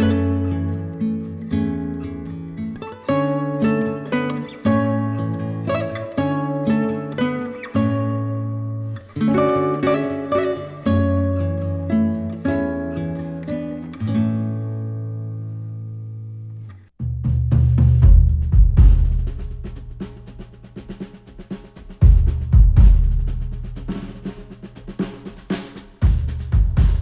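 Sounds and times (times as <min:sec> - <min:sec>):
plucked guitar: 0:00.0 - 0:16.9
deep bass: 0:17.0 - 0:20.8, 0:22.0 - 0:25.0, 0:26.0 - 0:27.0
drum kit: 0:17.0 - 0:27.0.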